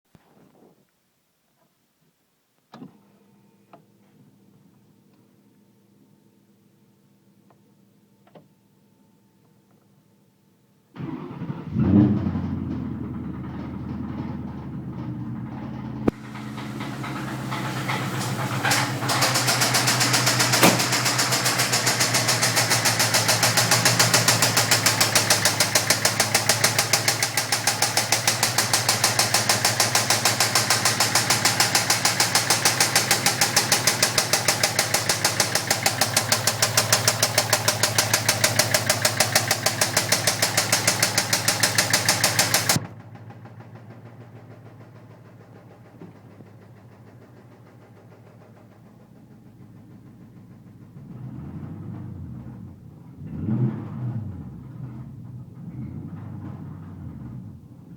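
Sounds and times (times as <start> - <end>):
engine running with rapid knock: 11.0 - 51.8.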